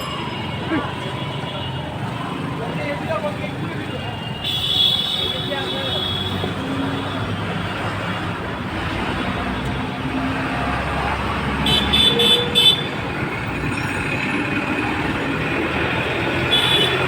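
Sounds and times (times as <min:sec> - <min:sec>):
road traffic noise: 0:00.0 - 0:17.0
vehicle horn tooting: 0:04.2 - 0:06.6, 0:11.6 - 0:12.9, 0:16.5 - 0:17.0.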